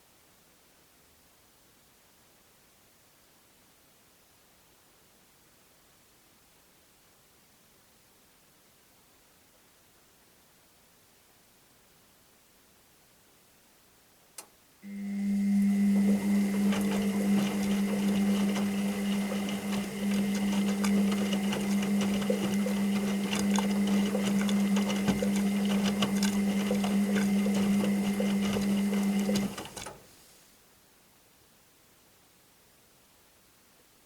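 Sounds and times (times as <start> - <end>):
washing machine humming: 14.8 - 30.3
small clicks and rattles: 16.1 - 30.0.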